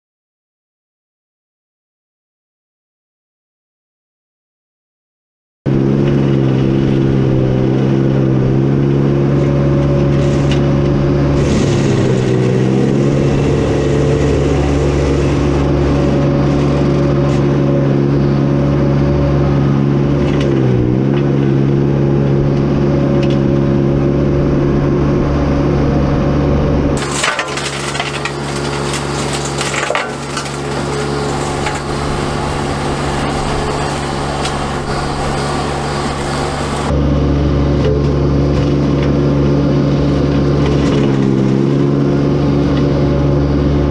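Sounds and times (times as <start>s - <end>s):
skid steer engine running: 5.7s - 43.9s
flail mower cracking brush: 10.0s - 10.7s, 11.4s - 17.5s, 27.0s - 36.9s.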